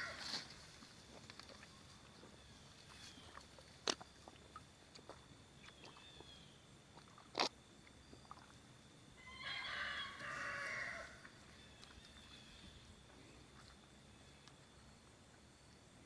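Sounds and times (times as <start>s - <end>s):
farm animal calling: 9.2s - 12.9s.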